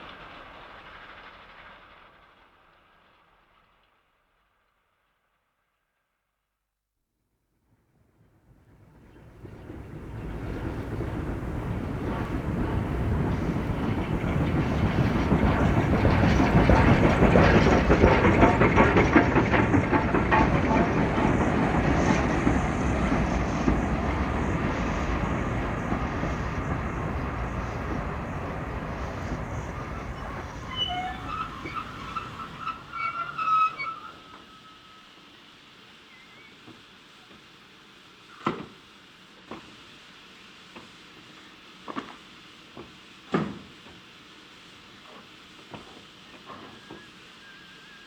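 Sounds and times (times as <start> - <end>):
train wheels clacking over rails: 9.0 - 35.5, 40.6 - 48.0
high wheel squeals: 12.1 - 35.5.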